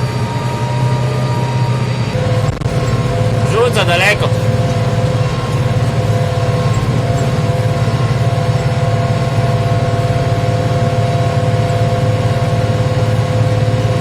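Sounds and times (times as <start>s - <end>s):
tractor diesel engine droning: 0.0s - 14.0s.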